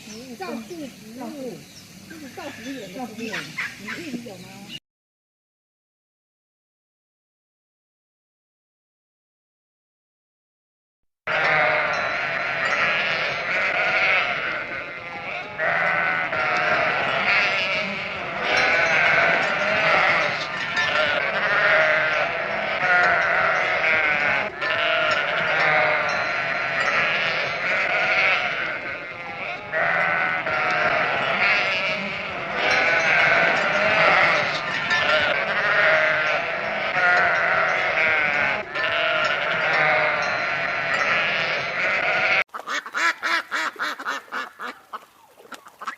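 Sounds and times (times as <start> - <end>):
sheep bleating: 11.3 - 44.1.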